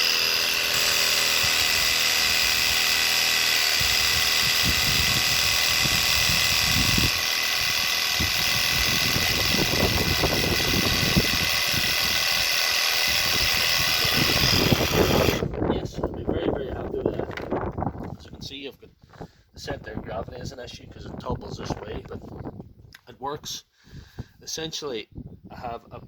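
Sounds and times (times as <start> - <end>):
air compressor buzzing with rattle: 0.0 - 15.6.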